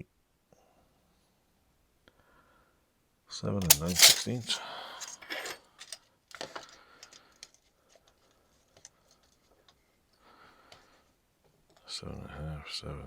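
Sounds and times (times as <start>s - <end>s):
light clicks and taps of tools: 3.6s - 9.8s.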